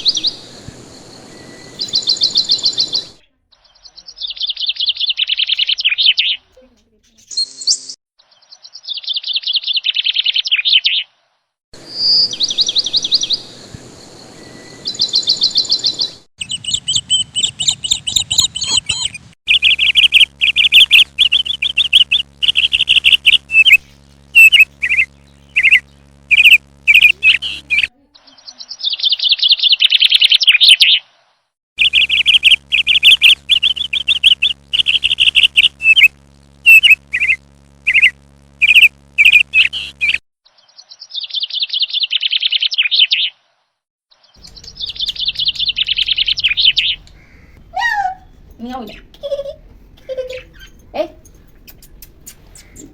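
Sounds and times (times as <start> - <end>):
steady low hum: 0.0 - 3.3, 11.8 - 16.3, 17.0 - 28.0, 31.8 - 40.2, 44.4 - 52.9
small birds chirping: 0.0 - 43.5, 44.1 - 52.9.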